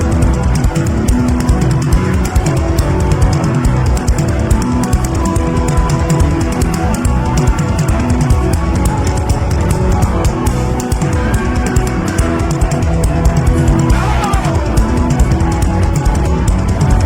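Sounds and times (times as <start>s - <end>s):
bass line: 0.0s - 17.0s
fast drum beat: 0.0s - 17.0s
guitar: 0.0s - 17.0s
sustained chords: 9.4s - 15.8s.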